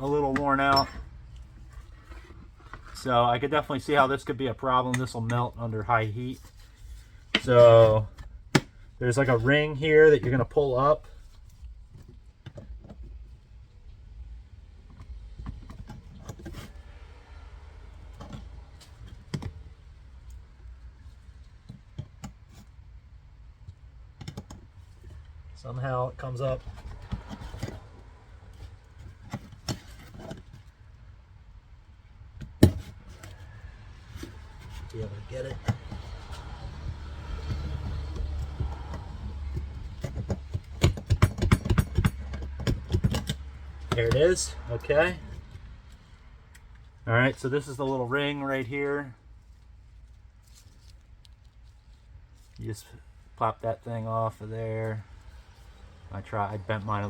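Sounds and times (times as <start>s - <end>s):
screwdriver clicking and scraping metal: 37.4s - 44.8s.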